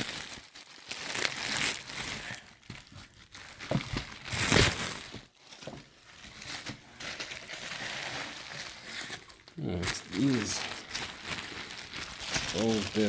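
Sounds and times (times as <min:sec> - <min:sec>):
packaging crinkling and rustling: 0:00.0 - 0:13.0.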